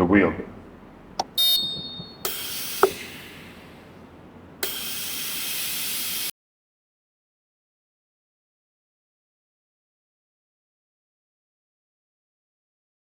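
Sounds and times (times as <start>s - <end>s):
sharp click: 1.2s - 3.2s
compressed air hissing: 2.2s - 6.3s.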